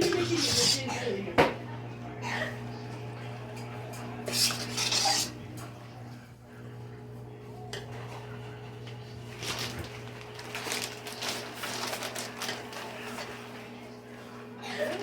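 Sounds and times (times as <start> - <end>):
dishes and utensils clinking: 0.0 - 1.2, 3.9 - 5.4.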